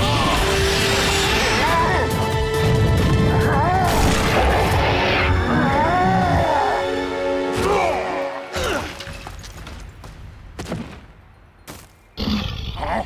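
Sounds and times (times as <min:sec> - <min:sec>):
dramatic cartoon music: 0:00.0 - 0:09.3.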